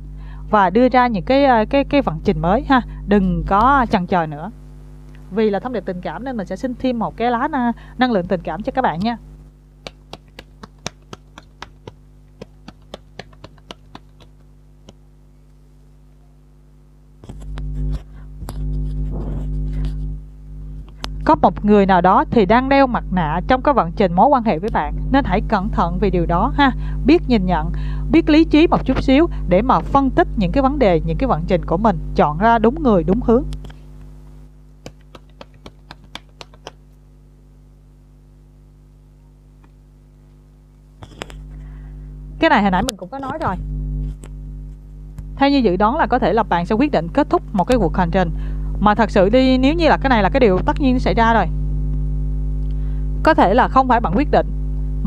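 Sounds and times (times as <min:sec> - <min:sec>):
low electrical hum: 0:00.0 - 0:55.0
cards being shuffled: 0:09.8 - 0:15.0, 0:34.8 - 0:36.8.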